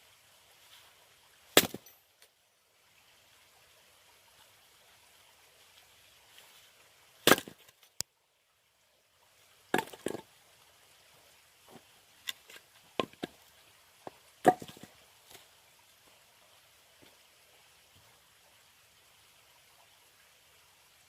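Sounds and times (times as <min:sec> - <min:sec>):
axe chopping firewood: 0:01.6 - 0:02.0, 0:07.2 - 0:07.7, 0:09.7 - 0:10.2, 0:14.4 - 0:14.9.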